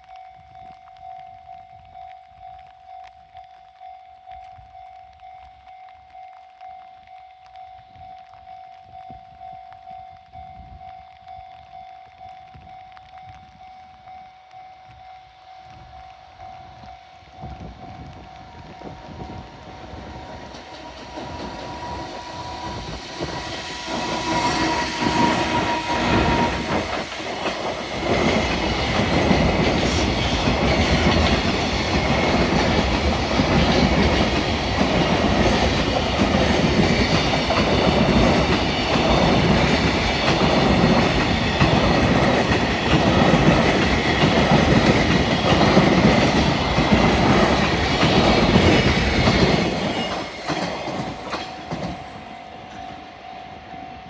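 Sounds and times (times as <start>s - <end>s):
freight train passing: 9.9s - 54.0s
wagon wheels clattering on rails: 26.0s - 52.3s.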